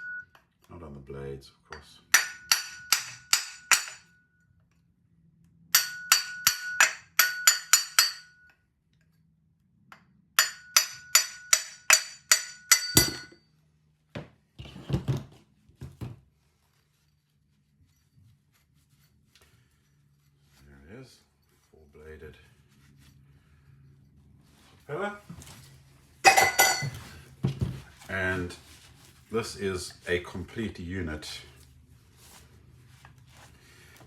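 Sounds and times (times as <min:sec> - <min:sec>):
hammer tapping metal propeller: 0:02.1 - 0:04.1, 0:05.8 - 0:08.5, 0:09.9 - 0:13.4.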